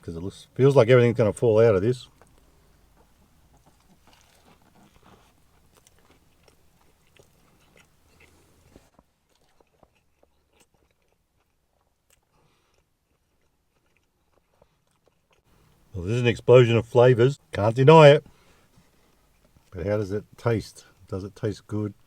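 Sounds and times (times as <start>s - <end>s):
biting and chewing food: 2.1s - 15.9s.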